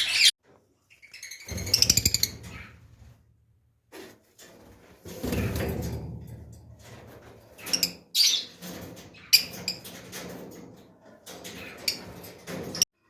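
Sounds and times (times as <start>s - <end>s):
birds clicking and rustling in cage: 1.4s - 3.2s, 4.1s - 12.9s.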